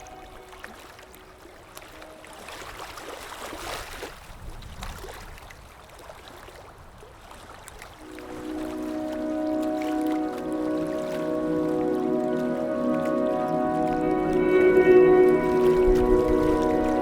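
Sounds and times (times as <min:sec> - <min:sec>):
soft music with sustained tones: 0:00.0 - 0:03.6, 0:08.0 - 0:17.0
water drips and splashes: 0:00.0 - 0:17.0
water lapping and trickling: 0:00.0 - 0:17.0.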